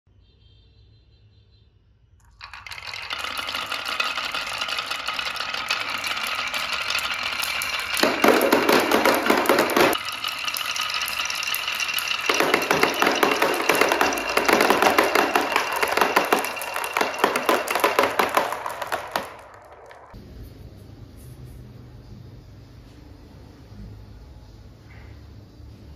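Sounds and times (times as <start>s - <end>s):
marbles clattering down wooden run: 2.2s - 20.2s.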